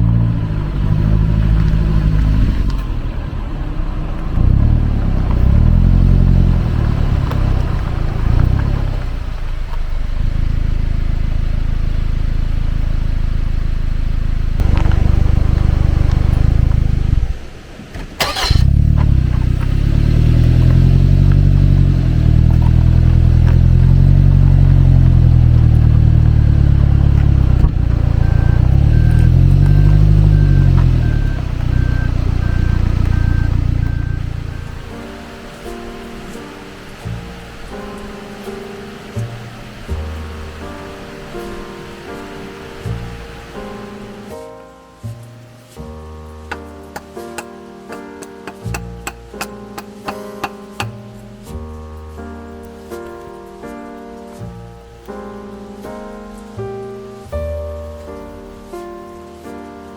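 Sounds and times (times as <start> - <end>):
car engine while driving: 0.0 - 44.4.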